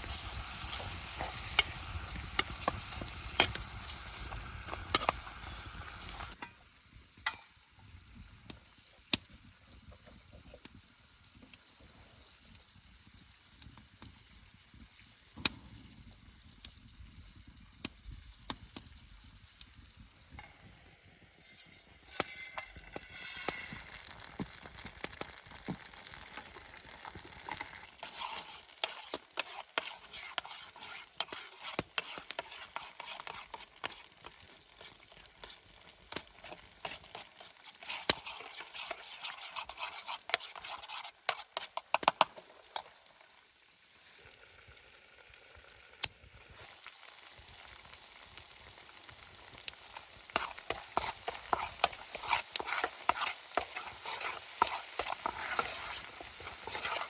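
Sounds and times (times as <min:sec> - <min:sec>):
food sizzling in oil: 0:00.0 - 0:57.0
utensil scraping a pan: 0:21.4 - 0:24.9, 0:25.6 - 0:42.8, 0:50.2 - 0:57.0.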